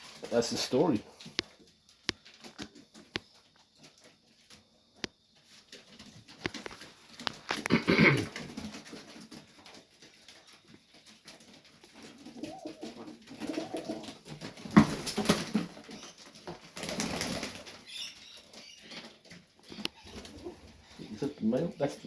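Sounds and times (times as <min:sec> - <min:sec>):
wings flapping: 0:05.4 - 0:22.0
pigeons cooing: 0:11.8 - 0:22.0.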